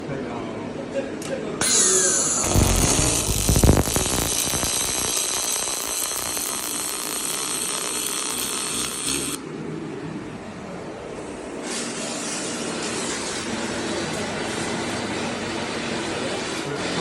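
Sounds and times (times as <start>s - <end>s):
laser welding hiss and crackle: 1.6s - 9.4s
low rumble: 2.5s - 5.1s.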